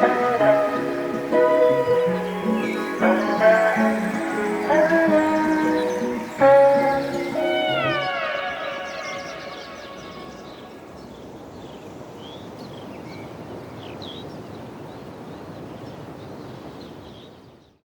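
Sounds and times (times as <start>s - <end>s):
background music: 0.0s - 10.8s
bird chirps: 0.0s - 12.5s
outdoor ambience: 0.0s - 13.7s.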